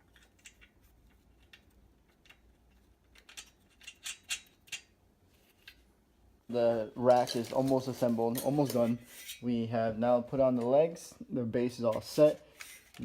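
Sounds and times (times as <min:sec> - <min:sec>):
metallic clicks of bolts: 0:03.1 - 0:04.9.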